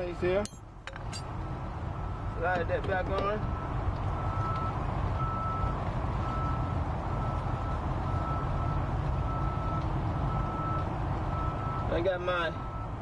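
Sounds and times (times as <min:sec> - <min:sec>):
reversing alarm beeping: 0:03.2 - 0:11.9.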